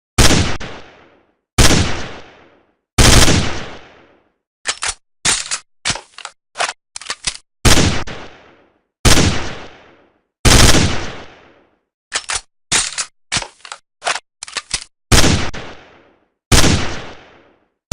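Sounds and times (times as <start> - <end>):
loud gunshots ringing: 0.2 - 4.1, 7.6 - 11.6, 15.1 - 17.5
rapid sharp gunfire bangs: 0.2 - 4.1, 7.6 - 11.6, 15.1 - 17.6.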